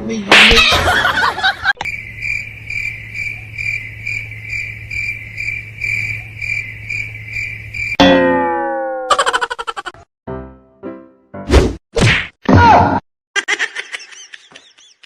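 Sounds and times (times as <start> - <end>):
cricket chirping: 1.8 - 8.0
low hum: 1.8 - 8.0.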